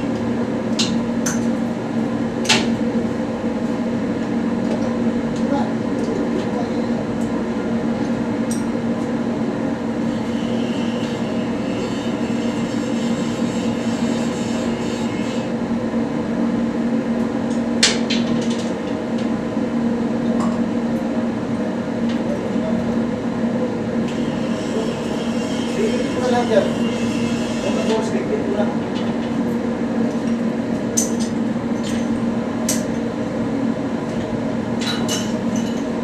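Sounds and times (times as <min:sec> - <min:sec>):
machinery drone: 0:22.1 - 0:28.9.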